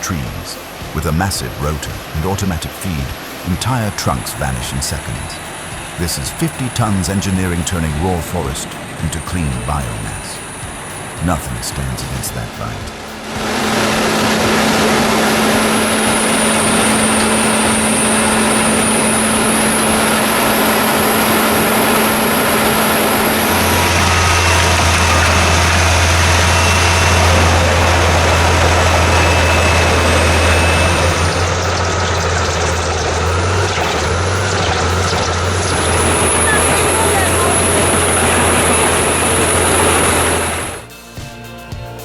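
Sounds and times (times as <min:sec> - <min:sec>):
diesel engine hum: 0:00.0 - 0:40.9
wood chipper rotor noise: 0:12.6 - 0:40.8.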